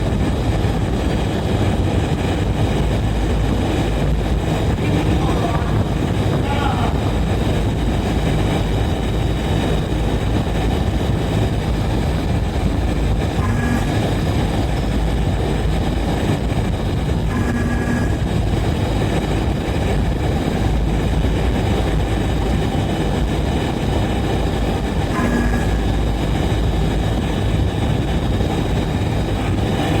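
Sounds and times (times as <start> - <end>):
foundry machinery rumbling: 0.0 - 30.0
short tones: 13.4 - 14.4, 17.3 - 18.2, 25.1 - 26.2.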